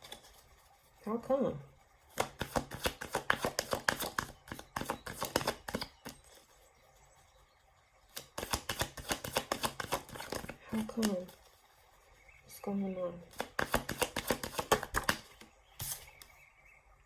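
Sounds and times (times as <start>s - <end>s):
cards being shuffled: 0.0s - 0.5s, 2.1s - 6.4s, 8.1s - 11.5s, 13.3s - 16.3s.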